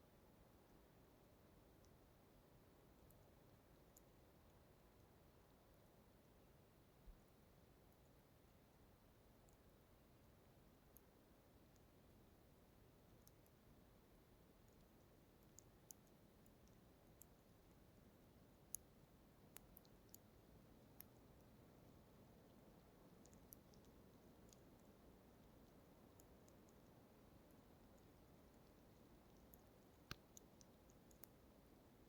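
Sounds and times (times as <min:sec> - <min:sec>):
faint low hiss: 0:00.0 - 0:32.0
faint high ticks: 0:00.5 - 0:06.4, 0:07.0 - 0:12.2, 0:12.8 - 0:32.0
tiny sharp clicks: 0:18.4 - 0:31.7.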